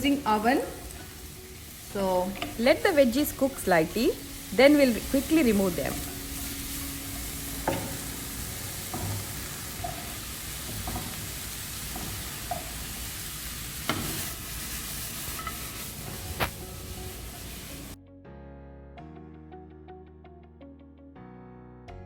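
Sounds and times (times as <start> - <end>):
vegetables sizzling in a pan: 0.0 - 18.0
utensil knocking against pan: 7.6 - 12.9, 13.8 - 14.2.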